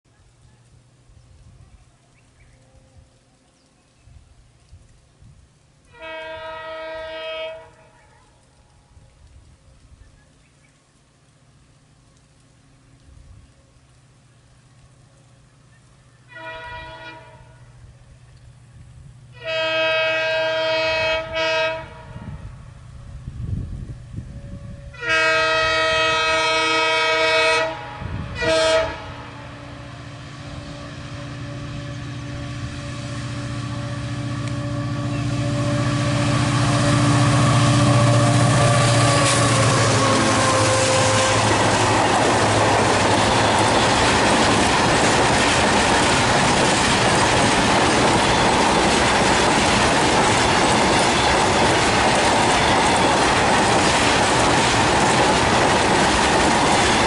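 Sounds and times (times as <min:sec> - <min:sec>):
locomotive horn blasts: 0:05.9 - 0:08.0, 0:16.3 - 0:17.7, 0:19.3 - 0:22.4, 0:24.3 - 0:41.9
train wheels rumbling on rails: 0:12.2 - 0:57.0.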